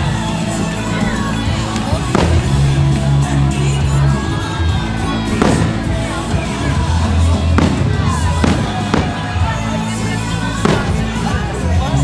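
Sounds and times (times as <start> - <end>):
sharp bangs: 0.0 - 11.6
crowd: 0.0 - 12.0
dance music over loudspeakers: 0.0 - 12.0.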